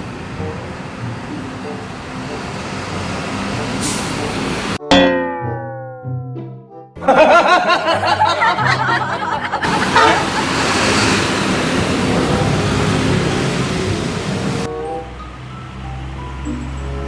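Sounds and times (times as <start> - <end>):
loud rushing hiss: 0.0 - 4.8, 9.6 - 14.7
background music: 0.1 - 17.0.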